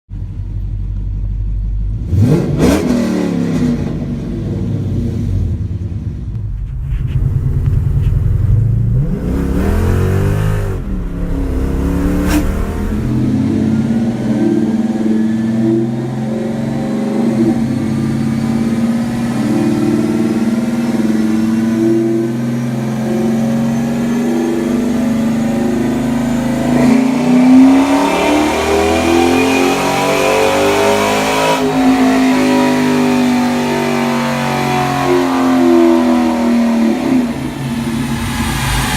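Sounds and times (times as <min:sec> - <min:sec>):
car engine idling and revving: 0:00.1 - 0:38.9.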